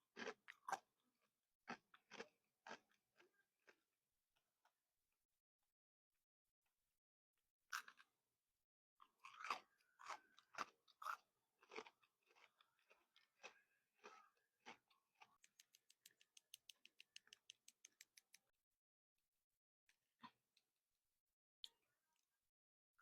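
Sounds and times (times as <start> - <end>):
crystal candy crunching: 9.2 - 16.0.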